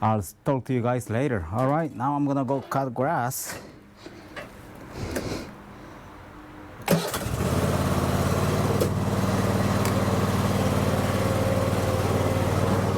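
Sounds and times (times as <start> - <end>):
mower engine starting and running: 6.8 - 12.9.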